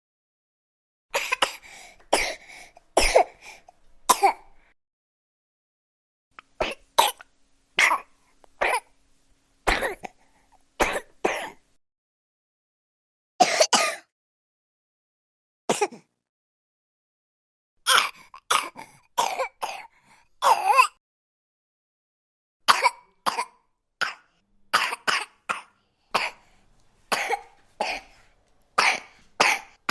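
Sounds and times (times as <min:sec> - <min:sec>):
baby coughing: 0:01.1 - 0:03.4, 0:04.1 - 0:04.5, 0:06.6 - 0:07.2, 0:07.8 - 0:08.9, 0:09.7 - 0:10.2, 0:10.8 - 0:11.6, 0:13.4 - 0:14.1, 0:15.7 - 0:16.1, 0:17.8 - 0:21.0, 0:22.7 - 0:26.4, 0:27.1 - 0:28.1, 0:28.8 - 0:29.9.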